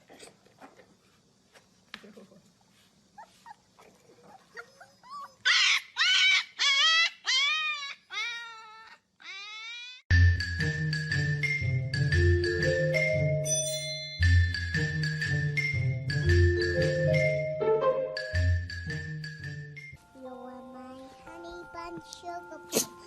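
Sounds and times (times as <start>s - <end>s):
dog whining: 3.2s - 10.0s
music with mallet percussion: 10.2s - 20.0s.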